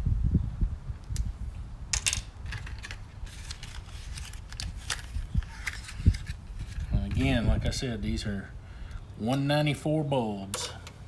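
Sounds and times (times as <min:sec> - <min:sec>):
bulb holders clicking and rattling: 0:01.9 - 0:07.3.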